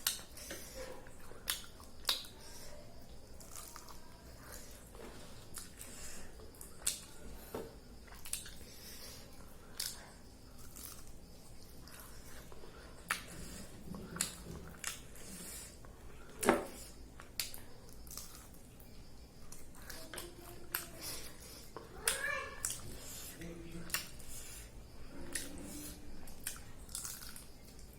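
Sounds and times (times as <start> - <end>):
wet chewing and lip-smacking: 0.0 - 2.6, 8.0 - 15.5, 25.3 - 27.9.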